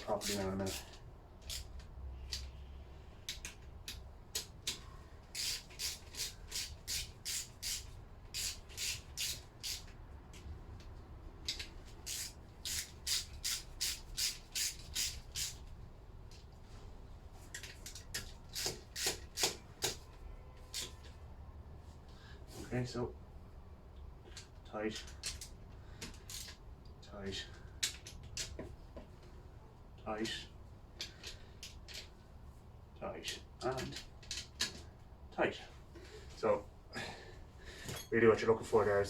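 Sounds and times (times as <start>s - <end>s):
ratchet wrench clicking: 0.1s - 2.5s, 3.3s - 10.0s, 11.4s - 15.6s, 17.6s - 20.0s.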